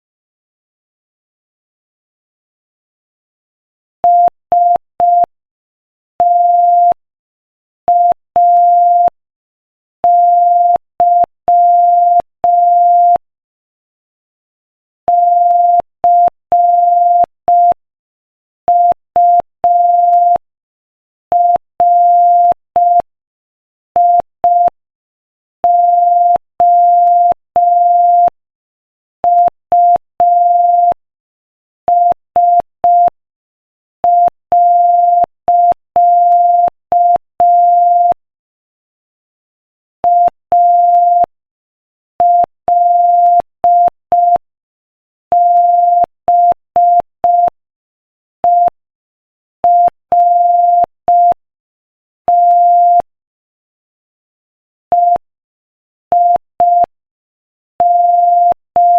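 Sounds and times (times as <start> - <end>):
morse code beeps: 6.2 - 7.0, 7.9 - 9.1, 10.1 - 13.2, 15.1 - 17.8, 18.7 - 20.4, 21.4 - 23.1, 25.7 - 28.3, 29.3 - 31.0, 45.3 - 47.6, 49.6 - 51.4, 52.3 - 53.1, 54.9 - 55.2, 56.1 - 56.9, 57.8 - 58.9.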